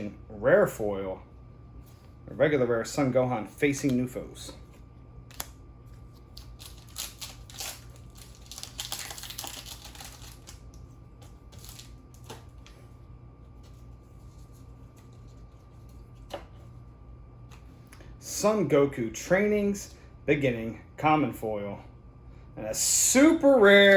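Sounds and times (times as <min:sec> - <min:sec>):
cards clicking and snapping: 0:05.3 - 0:05.6
rustle of cards or wrapper: 0:05.3 - 0:12.7.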